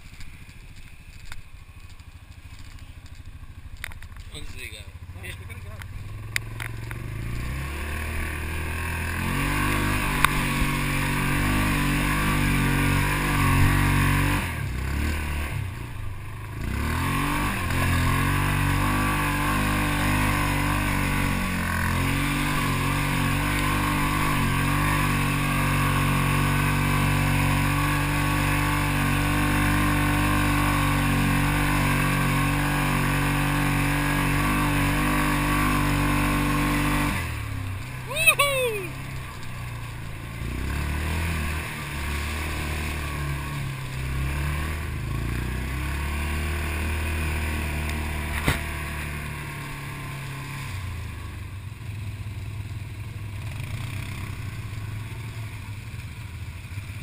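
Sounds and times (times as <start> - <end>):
off-road vehicle engine running: 0.0 - 57.0.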